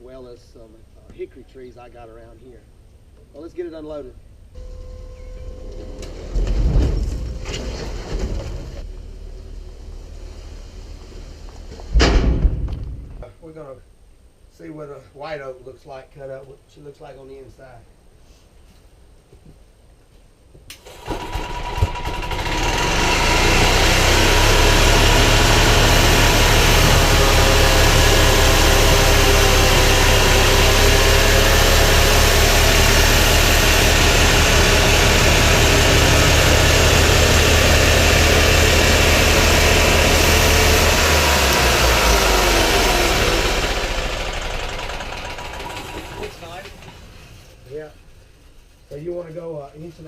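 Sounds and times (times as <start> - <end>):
gasoline engine running: 20.9 - 48.2.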